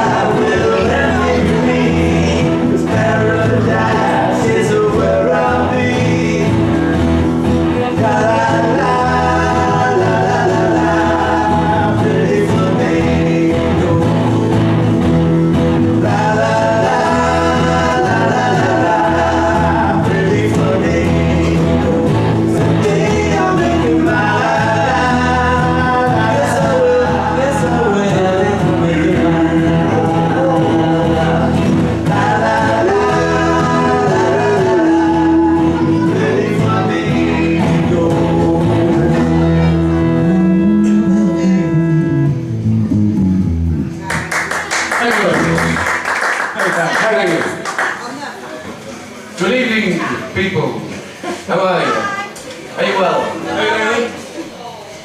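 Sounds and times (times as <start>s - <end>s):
person singing: 0.0s - 14.8s, 15.8s - 42.6s
live band playing: 0.0s - 45.8s.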